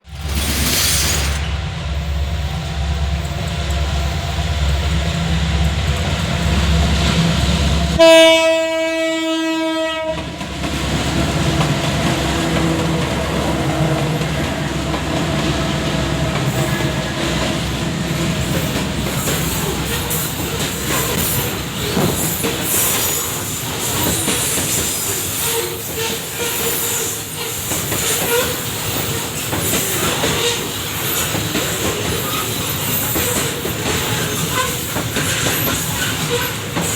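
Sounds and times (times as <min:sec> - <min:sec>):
wagons clattering over rails: 0:00.0 - 0:01.5, 0:27.7 - 0:36.9
train horn blast: 0:08.0 - 0:10.3
locomotive rumbling: 0:10.2 - 0:26.2.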